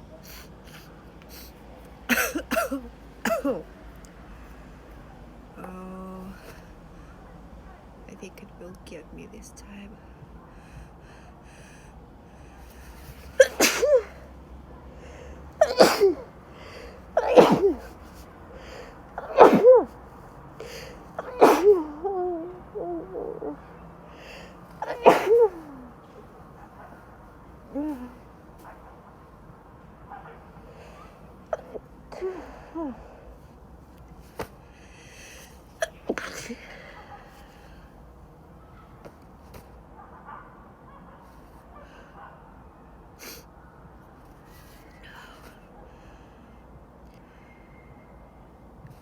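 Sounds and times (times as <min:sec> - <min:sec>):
faint breaths: 0:00.1 - 0:02.1, 0:09.9 - 0:13.4, 0:14.0 - 0:40.0, 0:41.1 - 0:49.0
woman sneezing: 0:00.3 - 0:03.7, 0:13.0 - 0:14.2, 0:15.6 - 0:16.3, 0:17.2 - 0:18.2, 0:19.2 - 0:20.0, 0:20.6 - 0:22.2, 0:24.3 - 0:26.0, 0:35.8 - 0:37.1
woman gasping: 0:20.6 - 0:26.0, 0:32.1 - 0:33.4.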